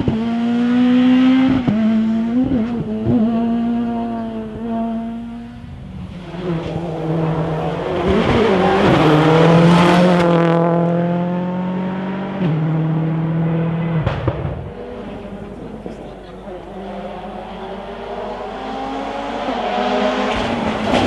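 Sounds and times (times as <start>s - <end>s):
rally car passing at full throttle: 0.0s - 21.0s
gear change: 1.5s - 10.5s.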